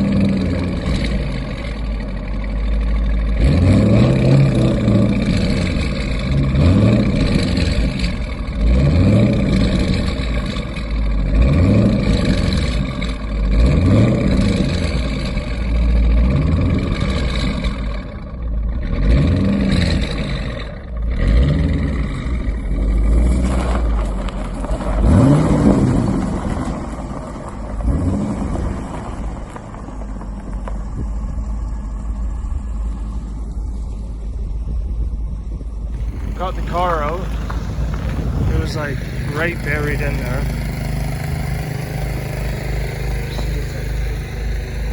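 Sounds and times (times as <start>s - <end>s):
car engine revving: 0.0s - 34.4s, 35.9s - 44.9s.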